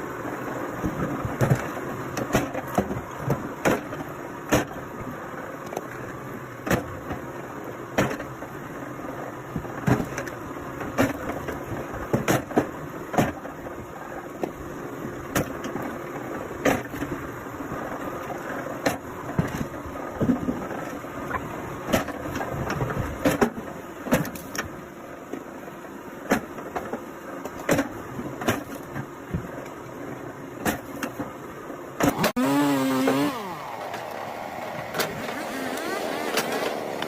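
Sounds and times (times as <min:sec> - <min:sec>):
sharp knocks and cracks of firewood: 0:00.8 - 0:04.8, 0:06.6 - 0:07.2, 0:08.0 - 0:08.4, 0:09.8 - 0:13.5, 0:15.3 - 0:15.8, 0:16.6 - 0:17.2, 0:18.8 - 0:24.7, 0:26.2 - 0:29.5, 0:30.6 - 0:31.3, 0:32.0 - 0:34.2
machine whine: 0:32.0 - 0:37.0
wood-processing machinery running: 0:32.0 - 0:37.0.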